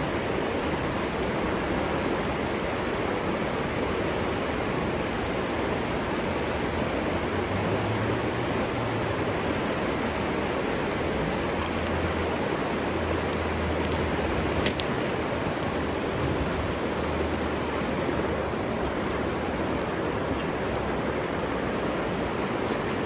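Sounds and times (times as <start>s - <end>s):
river water rushing: 0.0s - 23.0s.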